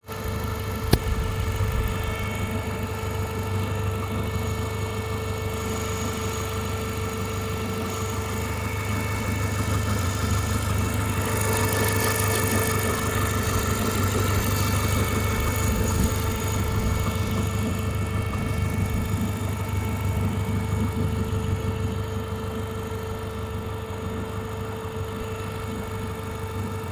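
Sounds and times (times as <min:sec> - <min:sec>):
car engine idling: 0:00.1 - 0:21.9
steady whine: 0:00.5 - 0:06.8.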